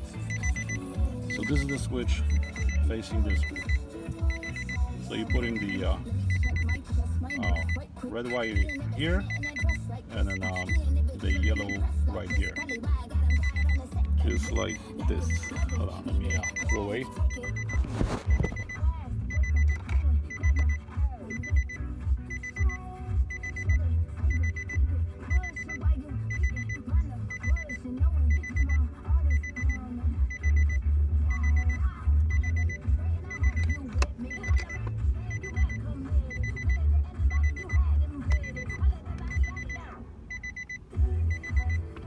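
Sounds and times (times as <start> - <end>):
vehicle warning chime beeping: 0.0 - 42.0.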